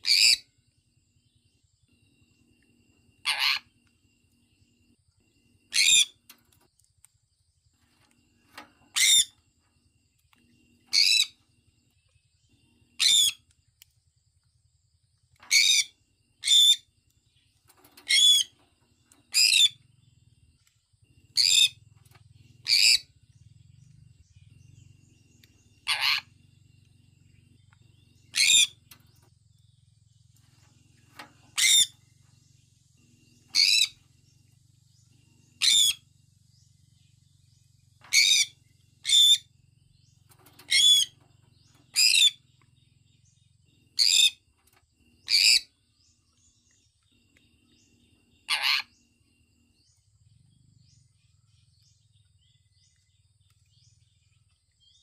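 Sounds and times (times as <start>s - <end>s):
parrot screeching calls: 0.0s - 0.4s, 3.2s - 3.7s, 5.7s - 6.2s, 13.0s - 13.4s, 15.5s - 16.8s, 18.1s - 18.5s, 25.8s - 26.3s, 28.3s - 28.8s, 31.6s - 31.9s, 33.6s - 33.9s, 35.6s - 36.0s, 40.7s - 41.1s, 48.5s - 48.9s.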